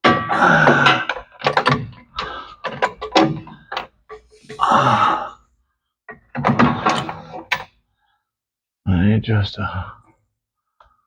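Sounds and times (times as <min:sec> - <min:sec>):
hand tools knocking on metal: 0:00.0 - 0:04.4.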